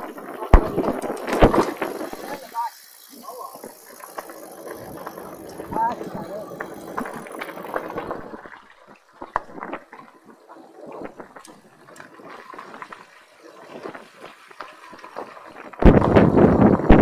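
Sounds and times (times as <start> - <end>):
wind buffeting microphone: 0.0 - 8.6, 15.2 - 17.0
faint clicks and rustles: 0.0 - 17.0.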